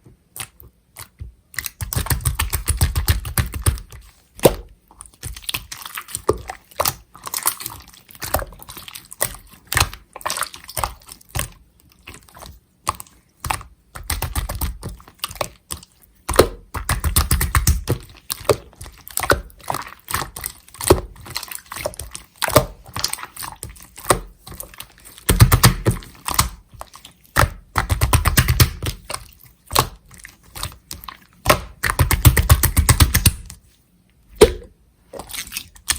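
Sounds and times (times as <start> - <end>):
slime squished by hand: 0.3 - 33.6, 34.4 - 35.9
small air bubble pops: 34.4 - 34.8.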